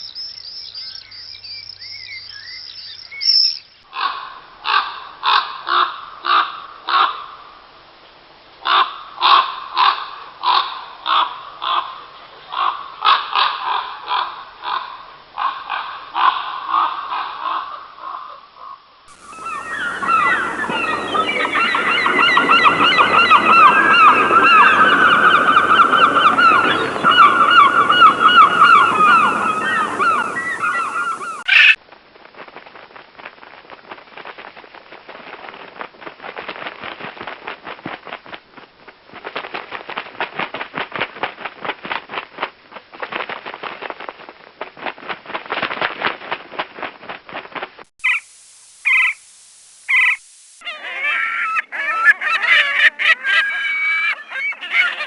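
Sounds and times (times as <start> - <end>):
short bird calls: 16.7 - 31.8, 48.0 - 55.0
rapid clicking bird chatter: 19.1 - 31.5, 48.0 - 49.2, 49.9 - 50.2
flock of birds calling: 19.1 - 31.8, 48.0 - 49.3, 49.9 - 55.0.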